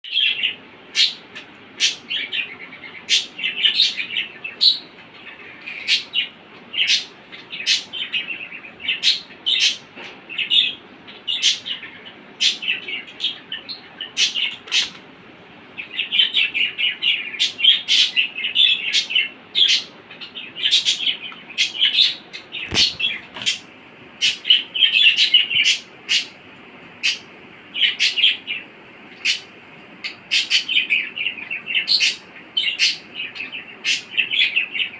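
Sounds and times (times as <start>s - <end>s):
budgerigar chattering: 15.9s - 26.4s, 27.0s - 34.9s.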